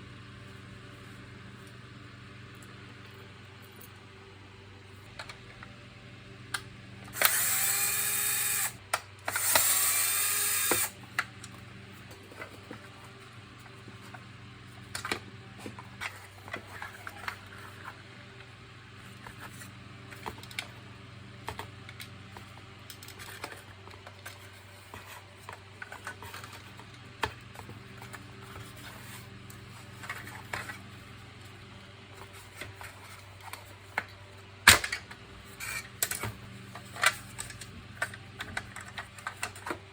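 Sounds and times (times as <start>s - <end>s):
electric screwdriver running: 7.1s - 11.0s
plastic parts clicking and knocking: 36.0s - 39.9s.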